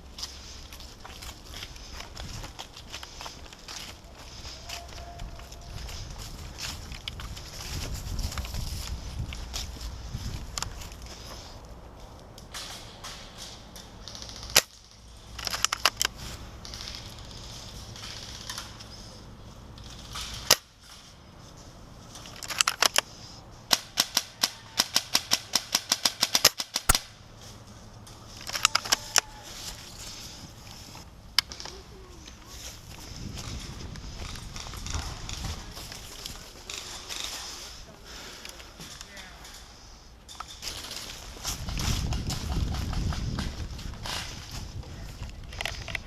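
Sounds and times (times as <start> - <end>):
airsoft guns firing: 23.7 - 27.2.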